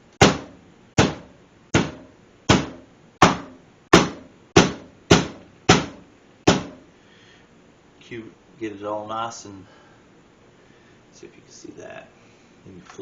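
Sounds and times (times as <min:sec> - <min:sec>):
mallet pounding meat on counter: 0:00.2 - 0:06.8.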